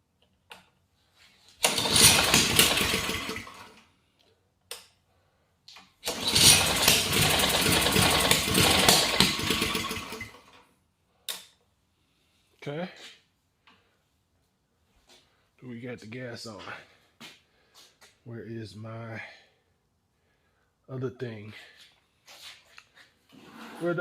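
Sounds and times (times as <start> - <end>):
snowblower engine pull-starting: 1.6 - 3.8, 6.0 - 10.6.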